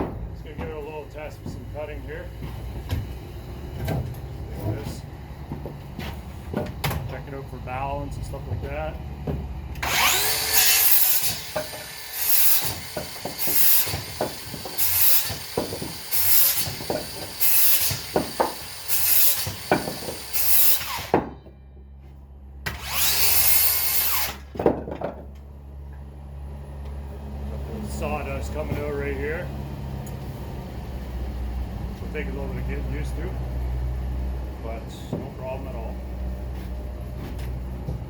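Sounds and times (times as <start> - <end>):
circular saw cutting wood: 9.8 - 21.3, 22.6 - 24.6.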